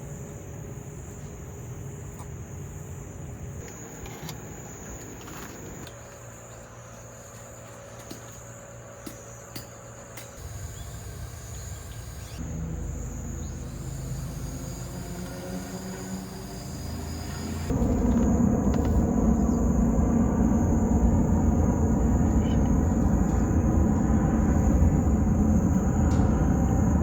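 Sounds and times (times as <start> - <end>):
insects chirring: 0.0 - 27.0
low rumble: 16.7 - 27.0.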